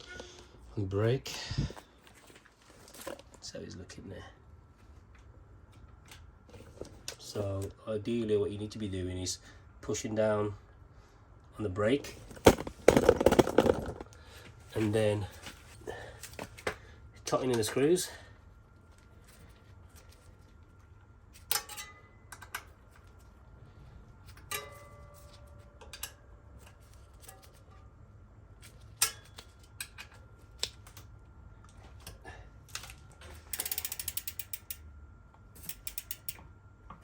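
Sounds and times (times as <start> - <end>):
ratchet clicking: 33.5 - 34.9, 35.6 - 36.4.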